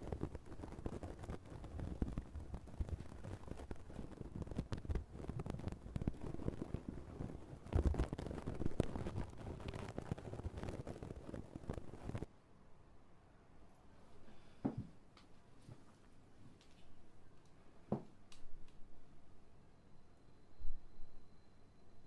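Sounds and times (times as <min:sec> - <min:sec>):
close crackly rustling and scratching: 0:00.0 - 0:12.3.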